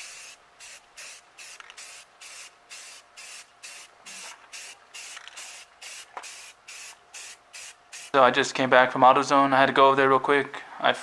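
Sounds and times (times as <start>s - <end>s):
spray paint can hissing: 0.0s - 8.2s.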